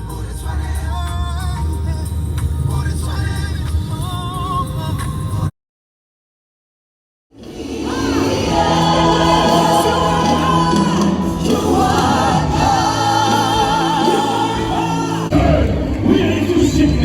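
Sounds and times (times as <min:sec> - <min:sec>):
gospel choir singing: 0:07.4 - 0:17.0.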